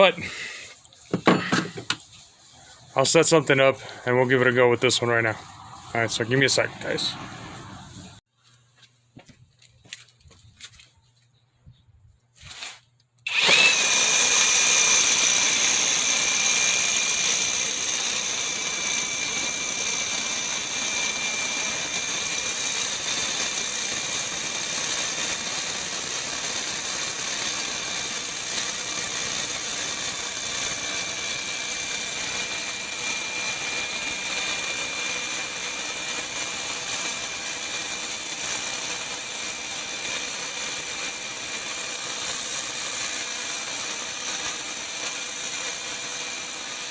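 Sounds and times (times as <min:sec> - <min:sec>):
rotary hammer running: 0:13.3 - 0:46.9.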